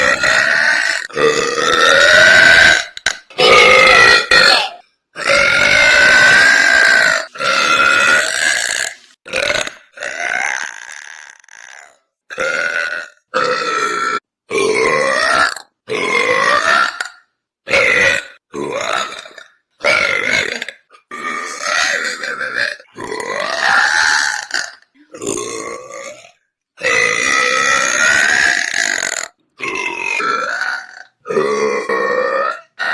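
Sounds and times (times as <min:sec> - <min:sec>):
woman burping: 0:00.0 - 0:12.0, 0:20.1 - 0:23.6, 0:24.4 - 0:26.3
woman belching loudly: 0:00.0 - 0:32.9.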